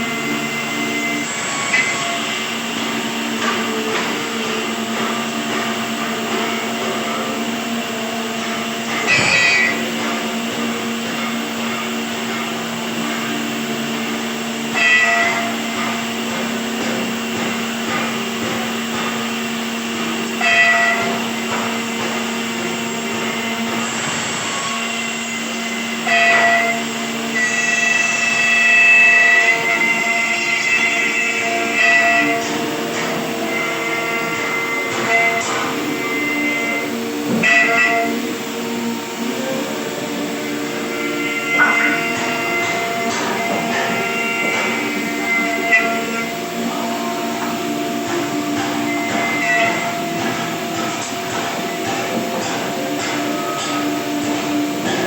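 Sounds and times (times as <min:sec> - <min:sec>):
woodworking machine motor hum: 0:00.0 - 0:55.0
sharp wood cutting sound: 0:08.9 - 0:09.8.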